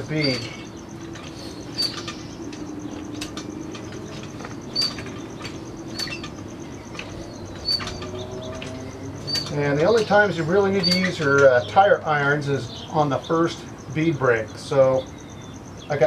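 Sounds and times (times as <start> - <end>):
short high squeak: 1.2 - 2.4, 4.7 - 6.4.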